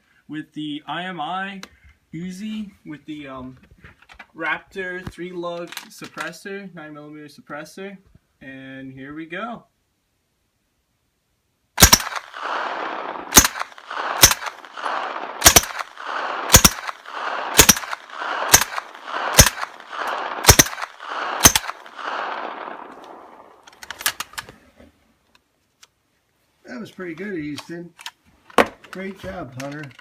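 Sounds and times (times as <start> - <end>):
suppressed gunshots with echo: 11.8 - 23.6.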